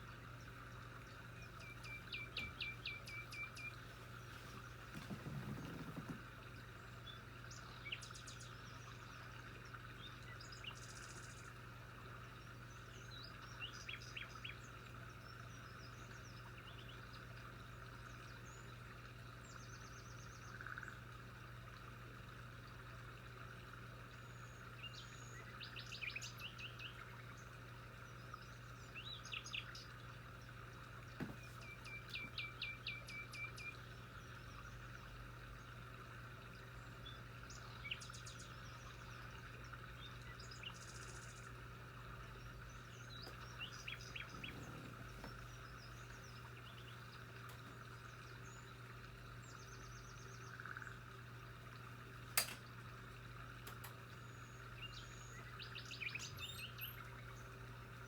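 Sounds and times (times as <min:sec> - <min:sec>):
small birds chirping: 0:00.0 - 0:11.6, 0:24.2 - 0:35.9, 0:36.5 - 0:58.0.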